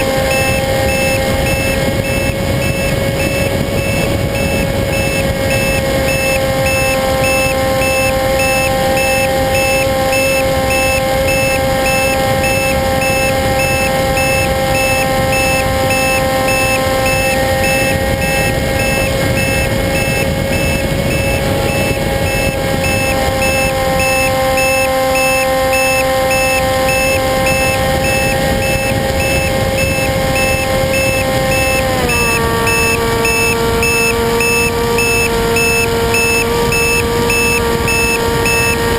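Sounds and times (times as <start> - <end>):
faint high-pitched beeping: 0.0 - 38.8
model plane motor whine: 0.0 - 38.9.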